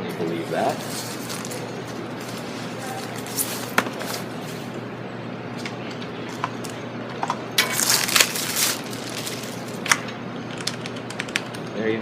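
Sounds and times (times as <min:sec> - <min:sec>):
keyboard typing: 0:10.5 - 0:11.7.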